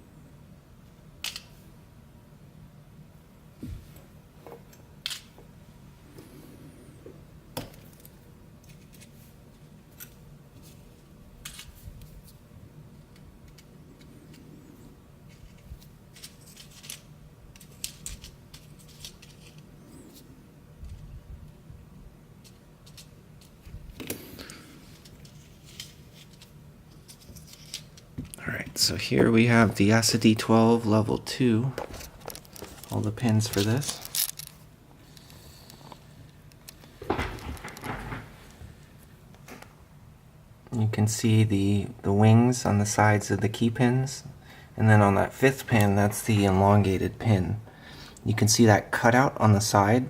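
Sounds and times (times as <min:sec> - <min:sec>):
metal lock parts clicking: 0:32.2 - 0:34.6.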